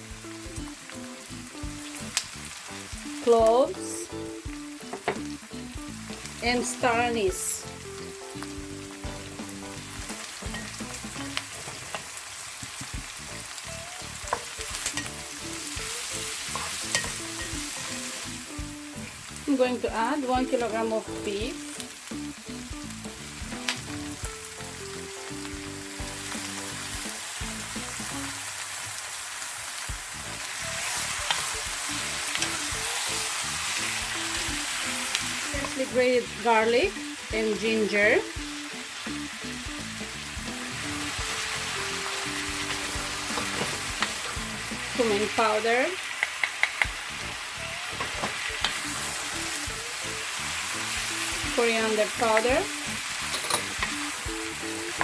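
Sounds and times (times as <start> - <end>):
beef sizzling in frying pan: 0.0 - 55.0.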